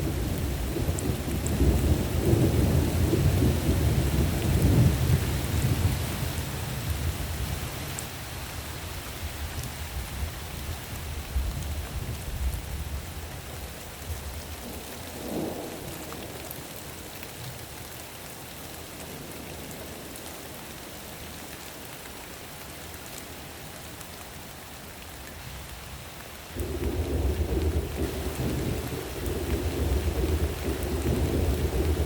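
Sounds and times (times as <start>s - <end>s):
thunder rumbling: 0.0s - 6.3s, 14.2s - 16.6s, 26.6s - 32.0s
steady rain: 0.0s - 32.0s.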